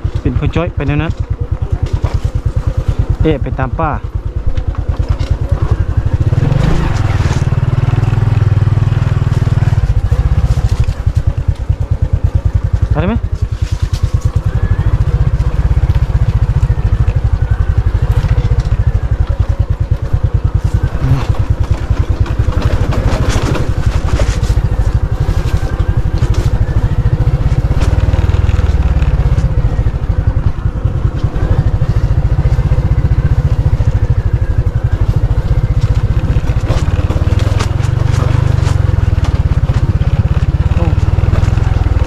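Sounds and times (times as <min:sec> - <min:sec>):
knocks and rattles: 0:00.0 - 0:29.8
motorcycle engine running: 0:00.0 - 0:42.0.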